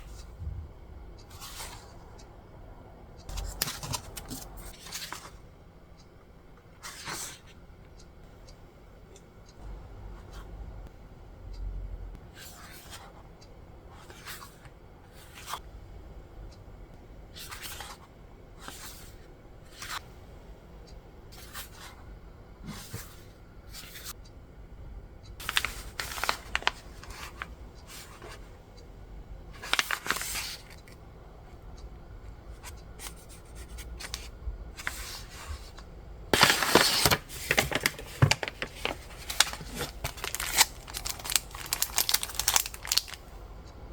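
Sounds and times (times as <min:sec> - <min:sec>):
packaging rustling and tearing: 0:25.4 - 0:27.2, 0:29.6 - 0:30.7, 0:36.4 - 0:43.2.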